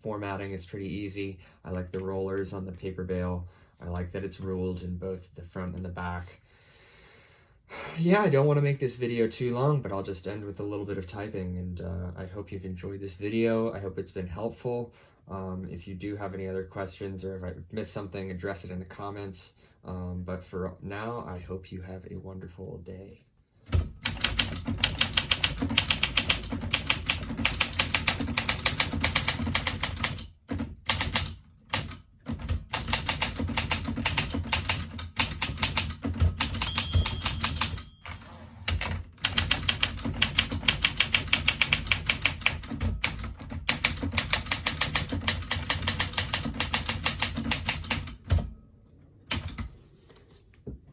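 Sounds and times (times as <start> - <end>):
manual typewriter typing: 23.7 - 48.5, 49.3 - 49.7.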